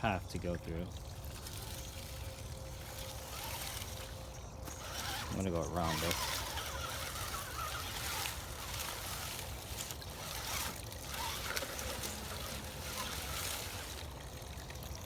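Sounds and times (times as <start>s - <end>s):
stream water rushing: 0.0s - 15.0s.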